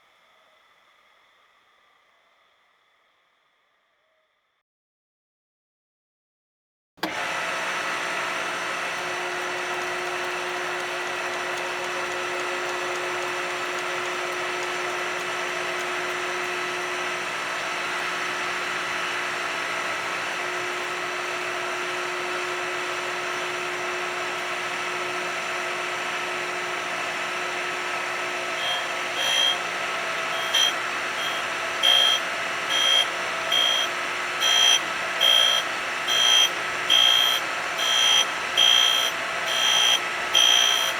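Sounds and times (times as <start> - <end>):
electric grinder whining: 7.0 - 40.9
short high-pitched grinder bursts: 28.4 - 40.9.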